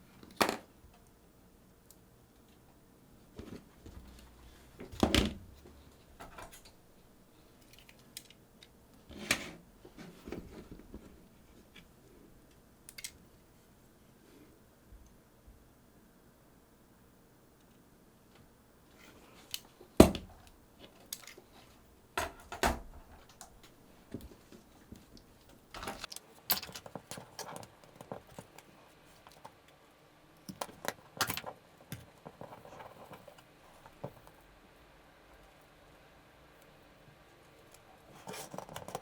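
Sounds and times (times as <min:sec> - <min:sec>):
small parts clicking and tapping: 0:07.6 - 0:08.8, 0:12.5 - 0:13.2, 0:22.2 - 0:29.8.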